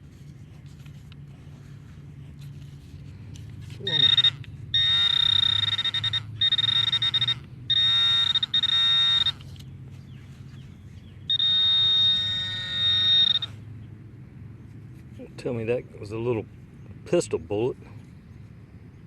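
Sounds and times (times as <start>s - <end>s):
metal detector high tone: 3.8s - 9.5s, 11.3s - 13.6s.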